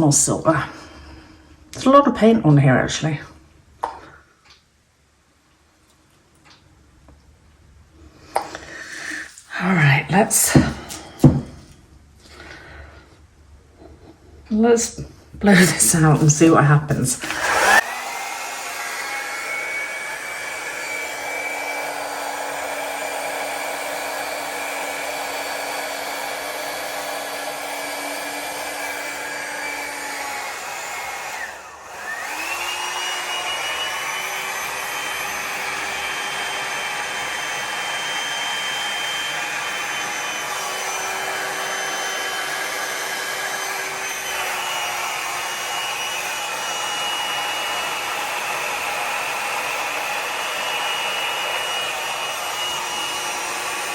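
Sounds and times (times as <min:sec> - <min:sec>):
hair dryer whining: 0:08.2 - 0:11.8, 0:13.8 - 0:53.9.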